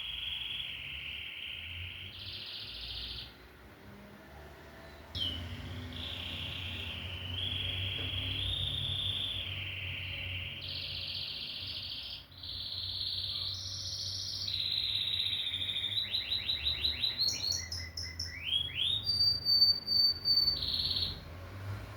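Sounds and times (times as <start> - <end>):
canary trilling: 0.0 - 3.4, 5.2 - 21.4.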